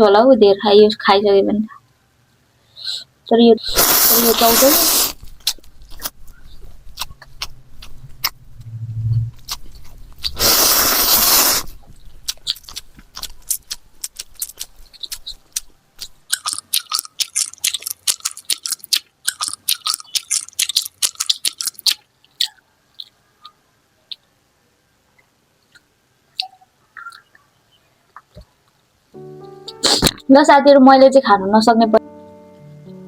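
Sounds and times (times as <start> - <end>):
person chewing crunchy food: 4.9 - 24.2
loud rushing noise: 8.4 - 9.5.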